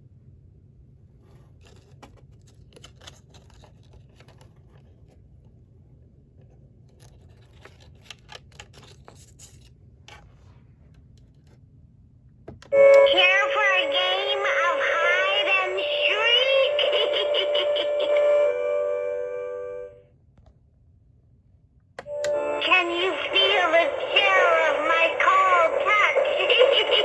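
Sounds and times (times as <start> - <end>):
faint clicks and scrapes: 1.2 - 5.8, 6.4 - 11.6
synthetic girl singing: 12.8 - 18.5, 22.1 - 27.0
held electronic tone: 12.8 - 20.0, 22.0 - 27.0.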